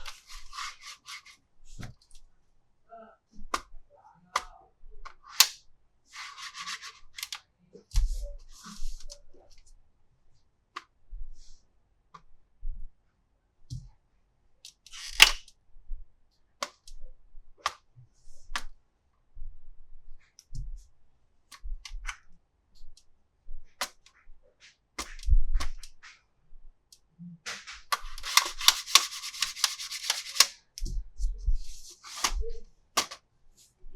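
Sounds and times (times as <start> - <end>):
rustling: 0.0 - 1.8
plastic toys clicking and knocking: 27.5 - 30.5, 33.0 - 33.2.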